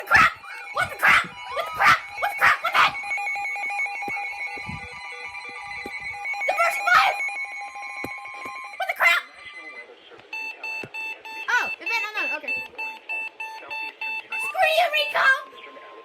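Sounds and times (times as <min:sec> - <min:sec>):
dog barking and yelping: 0:00.0 - 0:03.1
pulsing electronic alert tone: 0:00.0 - 0:15.9.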